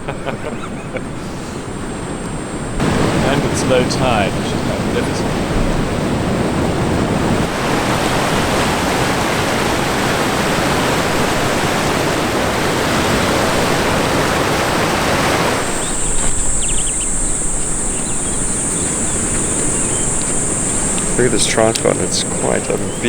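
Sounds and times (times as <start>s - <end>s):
high-pitched hiss: 0.0s - 23.0s
ocean surf washing on shore: 0.0s - 23.0s
faint chirps: 7.8s - 23.0s.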